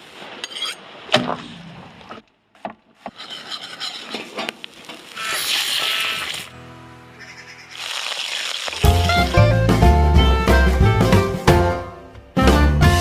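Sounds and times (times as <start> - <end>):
rough wooden scraping: 3.0 - 6.5.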